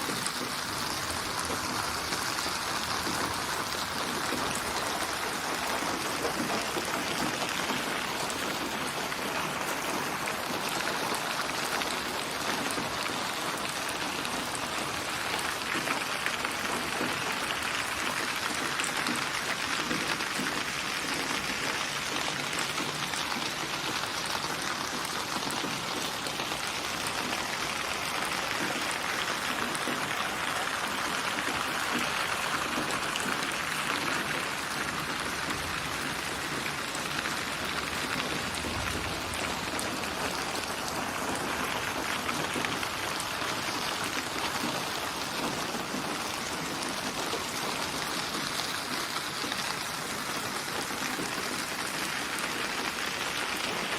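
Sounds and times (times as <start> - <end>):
rain pattering on a surface: 0.0 - 53.9.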